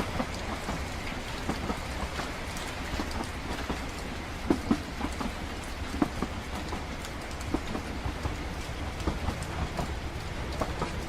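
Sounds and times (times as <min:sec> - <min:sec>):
train rumbling on rails: 0:00.0 - 0:11.0
wheels clacking and knocking: 0:00.0 - 0:11.0.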